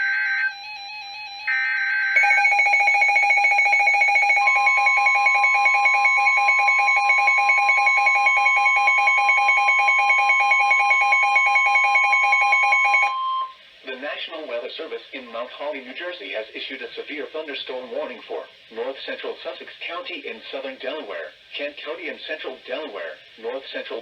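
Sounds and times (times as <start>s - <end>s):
rapidly pulsing alarm tone: 0.0s - 13.6s
steady warning alarm tone: 0.0s - 13.6s.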